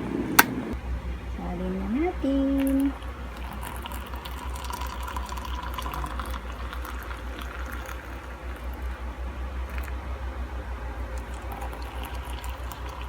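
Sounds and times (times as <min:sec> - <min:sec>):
water pouring into a mug: 0:02.6 - 0:10.0, 0:11.0 - 0:13.0.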